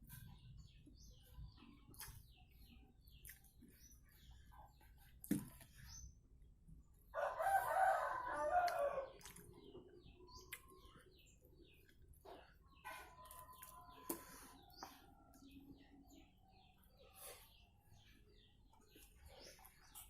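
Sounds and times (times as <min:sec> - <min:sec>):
small birds chirping: 0:00.0 - 0:20.0
rooster crowing: 0:07.2 - 0:09.1.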